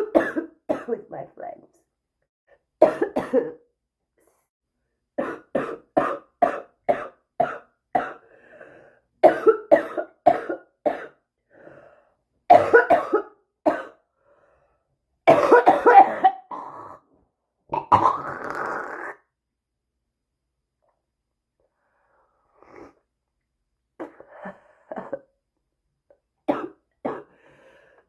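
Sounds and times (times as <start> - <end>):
person coughing: 0.0 - 1.0, 2.8 - 3.6, 9.2 - 11.2, 12.5 - 14.0, 15.3 - 17.0, 24.0 - 25.3, 26.5 - 27.3.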